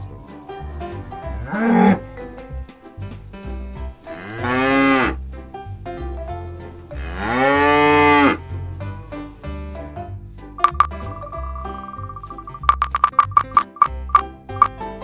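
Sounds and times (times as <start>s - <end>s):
background music: 0.0s - 15.0s.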